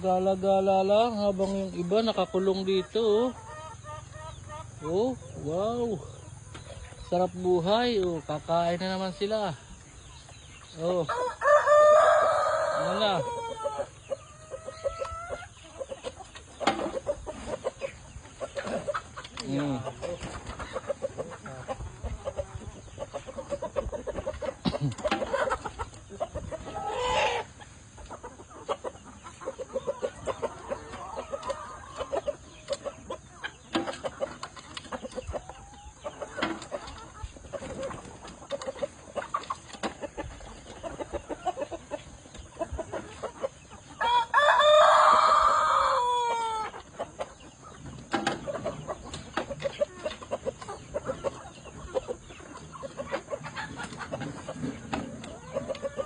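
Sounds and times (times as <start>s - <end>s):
chickens clucking: 0.0s - 56.0s
rooster crowing: 11.1s - 13.7s, 44.0s - 46.7s.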